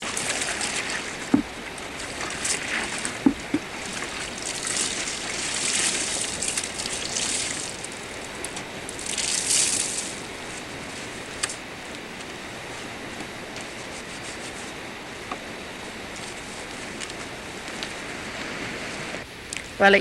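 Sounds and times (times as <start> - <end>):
water sloshing and trickling: 0.0 - 11.2
short thuds: 0.6 - 3.8.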